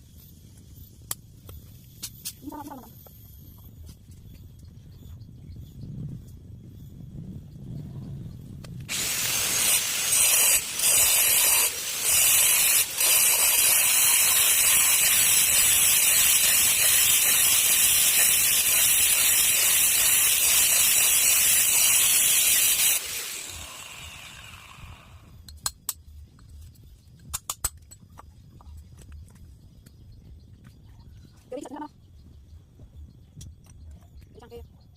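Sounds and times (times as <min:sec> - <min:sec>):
power tool grinding: 0:08.9 - 0:25.3.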